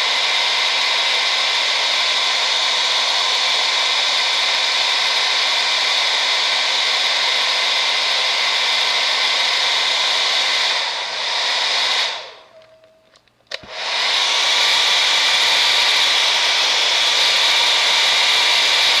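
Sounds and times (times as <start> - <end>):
hair dryer blowing: 0.0 - 19.0
switch click: 12.6 - 13.8.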